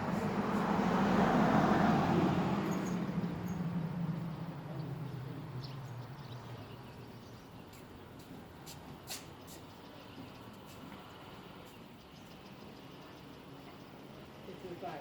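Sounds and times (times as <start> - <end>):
vehicle passing by: 0.0 - 9.2.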